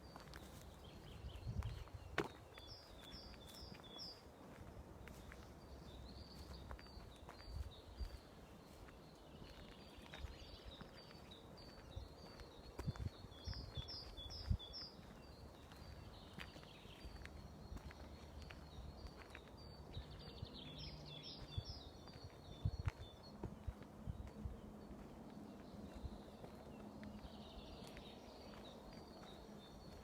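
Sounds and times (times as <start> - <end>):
songbirds singing: 0.0 - 30.0
soft footstep: 0.2 - 13.2.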